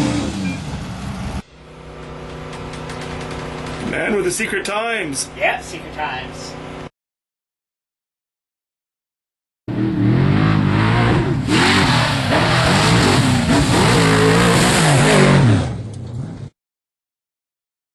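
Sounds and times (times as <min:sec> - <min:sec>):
race vehicle engine revving: 0:00.0 - 0:01.4, 0:09.7 - 0:16.4.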